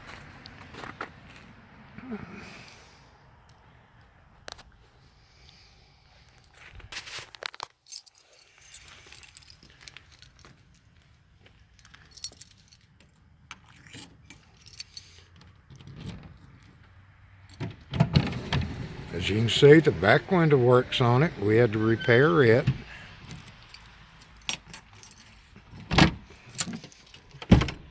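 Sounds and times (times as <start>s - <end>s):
keys jangling: 7.7s - 10.5s, 11.8s - 16.8s, 18.8s - 27.6s
handling noises: 11.8s - 27.8s.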